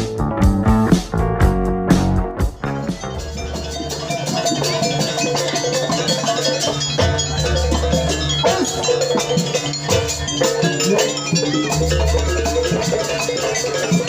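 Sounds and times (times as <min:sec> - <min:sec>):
steady bass: 0:00.0 - 0:04.5
drums: 0:00.0 - 0:14.0
struck metal percussion melody: 0:00.0 - 0:14.0.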